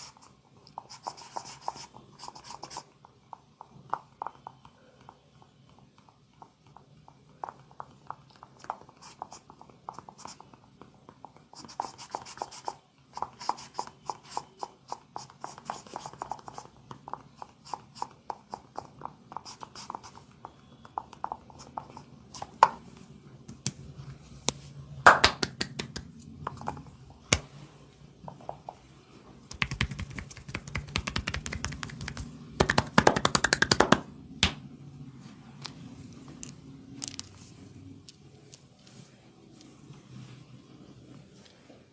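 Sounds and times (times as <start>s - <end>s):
hands tapping and patting: 15.2s - 23.9s, 24.5s - 27.5s, 29.5s - 34.6s
hands rubbing fast: 29.5s - 34.1s.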